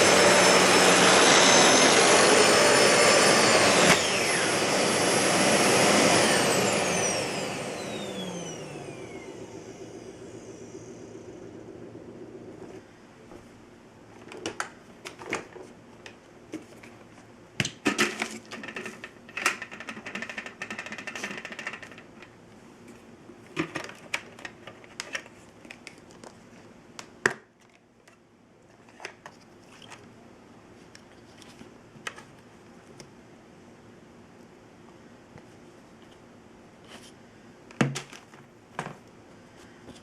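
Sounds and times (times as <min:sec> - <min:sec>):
vacuum motor hum: 0:00.0 - 0:12.8
plastic clicks and rattles: 0:17.6 - 0:22.4, 0:23.6 - 0:26.4.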